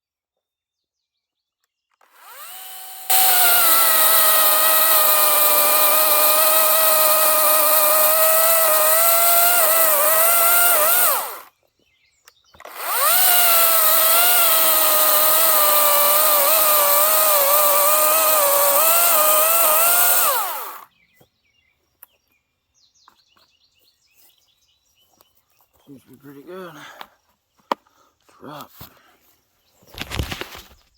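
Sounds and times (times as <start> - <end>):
electric chainsaw high whine: 2.0 - 11.5, 12.6 - 20.9.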